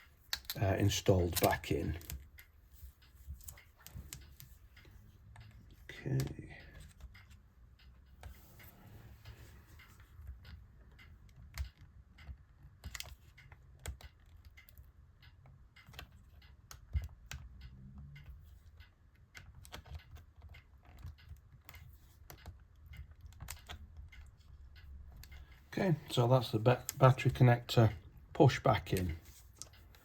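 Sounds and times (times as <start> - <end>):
tool clicking on laptop parts: 11.3 - 14.8, 15.4 - 17.6, 18.2 - 24.4.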